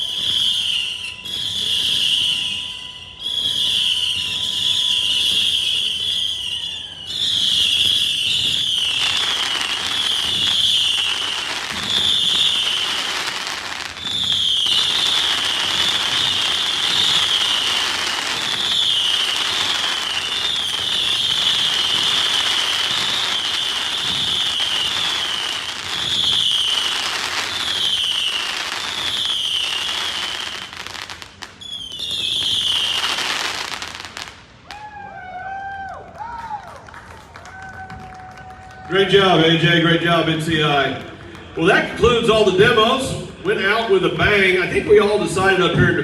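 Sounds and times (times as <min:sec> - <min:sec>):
high firework whistles: 0:00.0 - 0:34.7
firework crackle and pops: 0:00.0 - 0:35.0.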